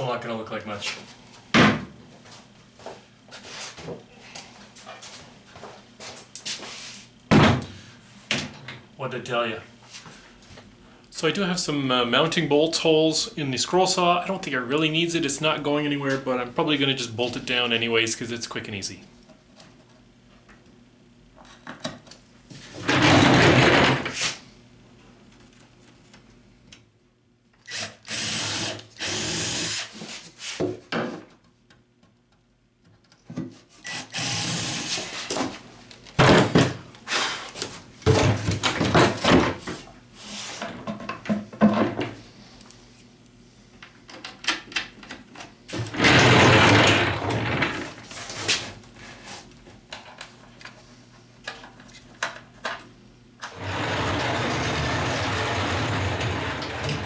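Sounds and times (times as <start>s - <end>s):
power drill running: 27.7s - 29.9s, 33.9s - 35.1s, 45.9s - 48.0s, 53.6s - 57.0s.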